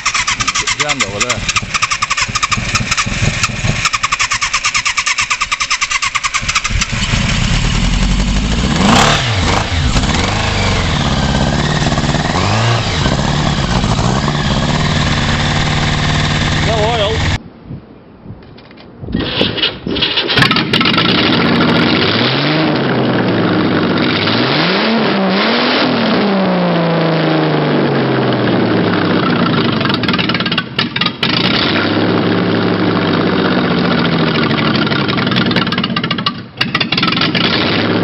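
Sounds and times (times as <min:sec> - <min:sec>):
large engine starting and revving: 0:00.0 - 0:17.4, 0:19.2 - 0:38.0.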